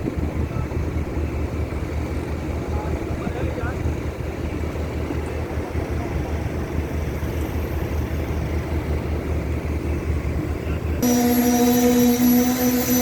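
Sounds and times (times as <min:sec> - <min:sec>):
concrete pump engine rumbling: 0:00.0 - 0:13.0.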